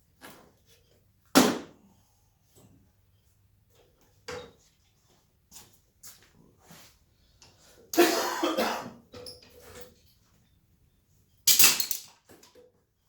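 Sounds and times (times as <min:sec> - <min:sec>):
man coughing: 0:08.0 - 0:09.0.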